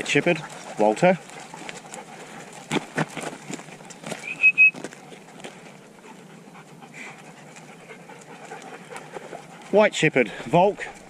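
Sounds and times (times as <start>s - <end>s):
dog panting: 0.0s - 11.0s.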